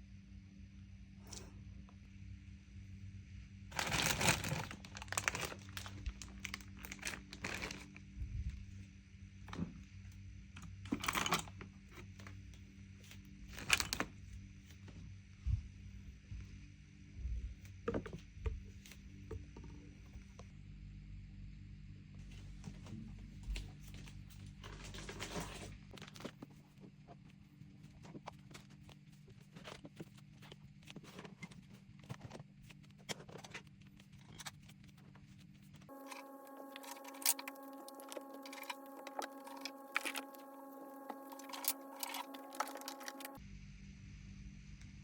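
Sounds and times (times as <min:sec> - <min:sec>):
steady low hum: 0:35.9 - 0:43.8
hum with higher tones: 0:35.9 - 0:44.5.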